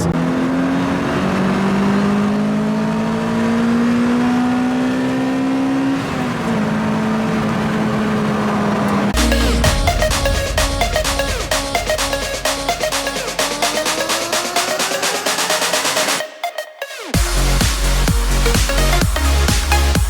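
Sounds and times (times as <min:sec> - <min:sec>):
car engine accelerating: 0:00.0 - 0:16.3
music: 0:09.2 - 0:20.0.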